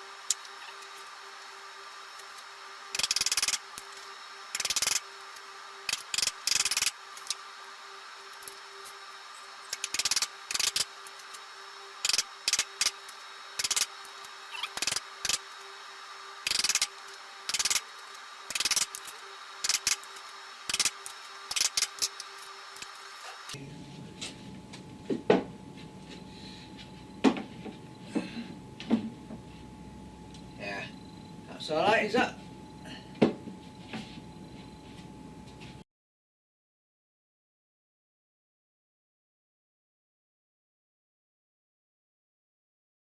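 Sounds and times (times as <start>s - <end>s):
steady machine hum: 0.0s - 35.8s.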